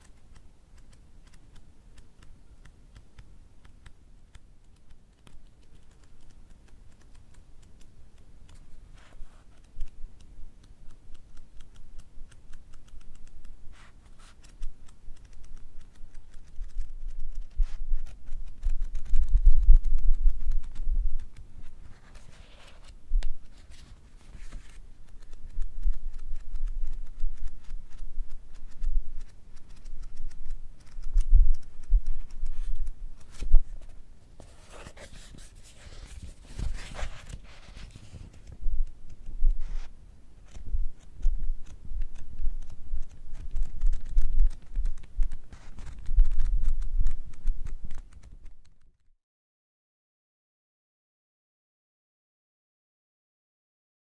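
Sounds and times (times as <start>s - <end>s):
book pages riffling: 13.8s - 48.8s.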